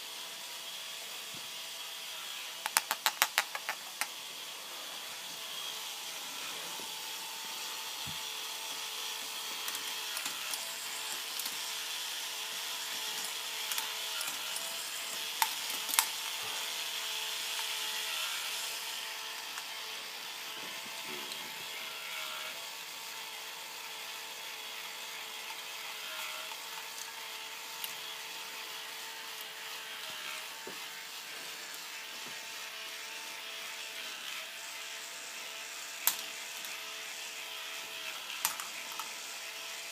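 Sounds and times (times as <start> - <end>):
small electric motors whining: 0.0 - 39.9
plastic balls clicking on tracks: 2.6 - 4.1, 9.6 - 11.8, 13.0 - 16.4, 36.0 - 36.8, 38.4 - 39.2.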